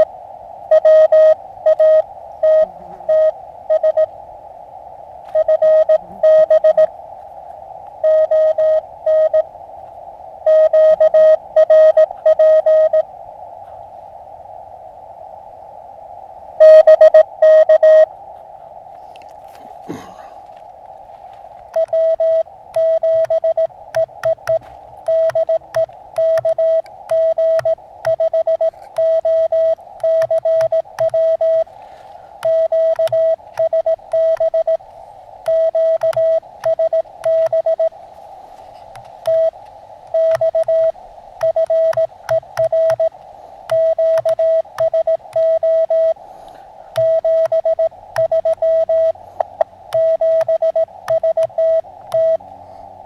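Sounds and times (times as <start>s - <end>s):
receiver hiss: 0.0s - 53.0s
morse code tone: 0.7s - 4.1s, 5.3s - 6.9s, 8.0s - 9.5s, 10.4s - 13.1s, 16.6s - 18.1s, 21.7s - 31.7s, 32.4s - 34.8s, 35.4s - 38.0s, 39.0s - 46.3s, 46.9s - 52.5s.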